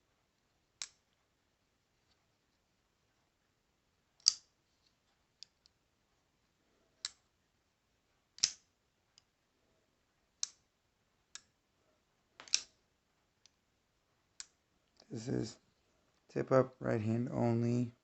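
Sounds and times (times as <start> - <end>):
folding knife clicks: 4.2 - 4.5, 8.4 - 8.7, 12.4 - 12.7.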